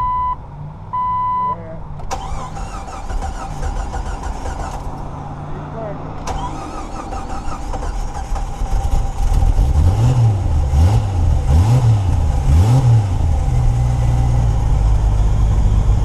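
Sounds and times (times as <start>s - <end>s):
car engine revving and idling: 1.9s - 16.0s.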